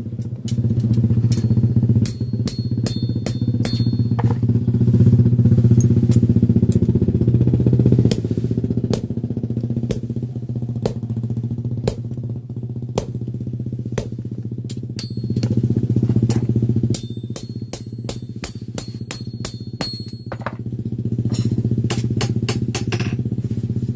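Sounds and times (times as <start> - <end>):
pulsing mechanical drone: 0.0 - 23.6
sharp strikes: 1.3 - 4.2, 16.9 - 20.3.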